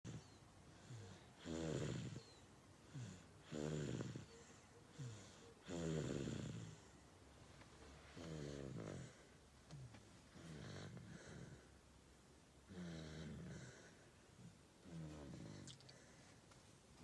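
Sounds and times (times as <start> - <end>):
baby snoring: 0.1 - 6.9, 8.2 - 9.3, 10.3 - 11.7, 12.7 - 13.9.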